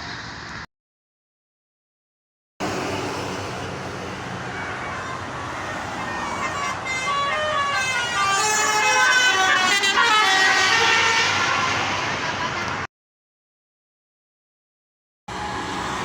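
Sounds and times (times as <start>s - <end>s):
road noise: 0.0s - 0.7s, 2.6s - 12.9s, 15.3s - 16.0s
bus horn playing a tune: 4.6s - 12.7s.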